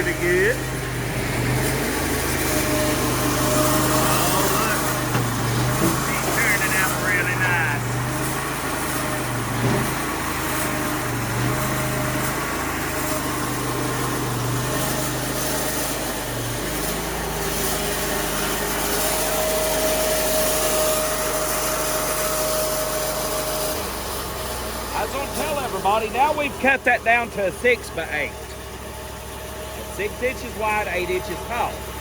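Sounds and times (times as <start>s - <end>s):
sawmill engine running: 0.0s - 32.0s
steady whine: 3.5s - 8.1s.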